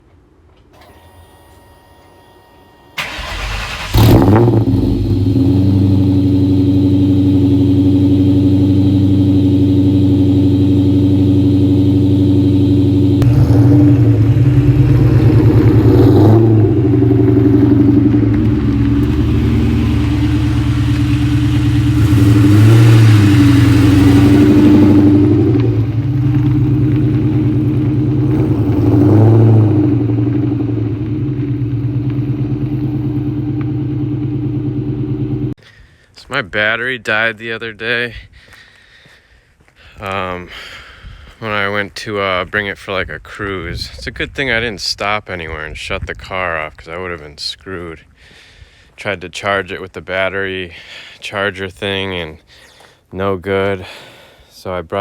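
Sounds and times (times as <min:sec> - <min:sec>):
car engine cranking: 0:03.0 - 0:35.6
car engine idling and revving: 0:03.0 - 0:35.6.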